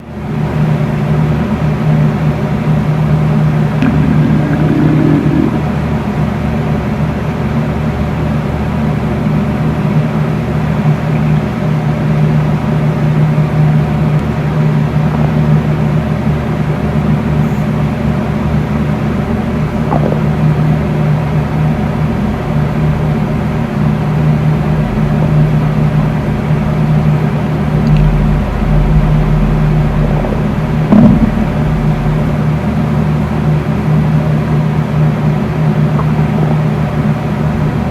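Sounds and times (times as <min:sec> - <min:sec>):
electric fan humming: 0:03.5 - 0:06.1, 0:22.1 - 0:34.4
stomach growling: 0:03.8 - 0:05.9, 0:19.7 - 0:20.8, 0:27.8 - 0:32.5.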